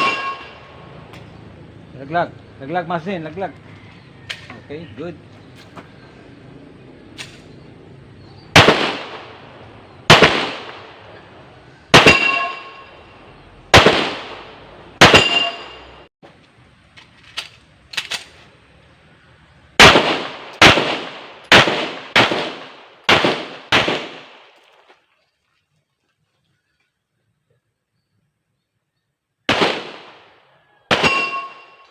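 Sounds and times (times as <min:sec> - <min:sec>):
pistol shots with echo: 0:00.0 - 0:00.7, 0:08.5 - 0:11.3, 0:11.9 - 0:13.0, 0:13.7 - 0:15.9, 0:19.8 - 0:24.5, 0:29.5 - 0:31.8.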